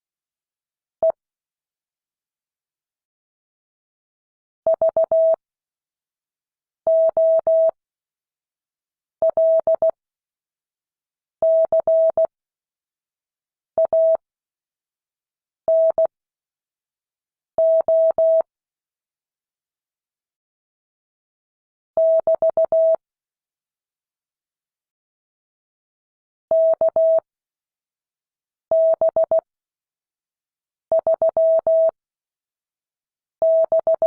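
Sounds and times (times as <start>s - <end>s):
morse code beeps: 31.0s - 31.9s, 33.4s - 34.0s.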